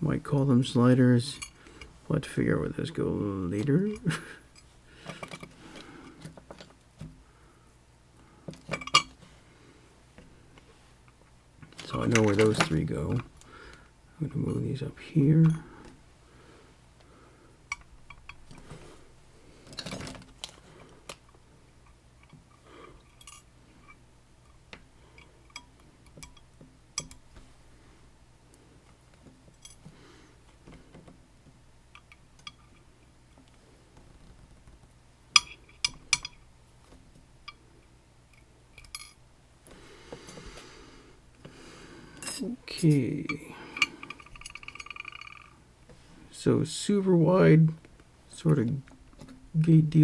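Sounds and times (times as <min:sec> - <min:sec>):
small metal parts clinking: 0:23.0 - 0:23.5, 0:38.8 - 0:39.2, 0:42.2 - 0:45.5.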